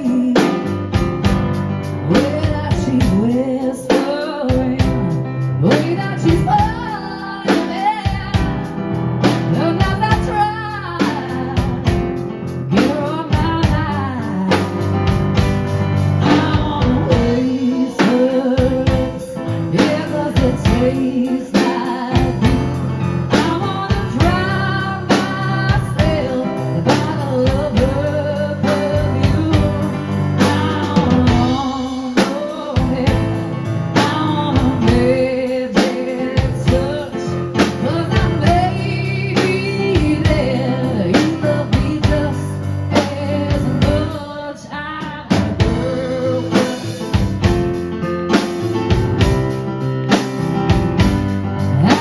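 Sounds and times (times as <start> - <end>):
woman singing: 0.0 - 15.2, 16.2 - 47.6, 51.7 - 52.0
country band playing: 0.0 - 52.0.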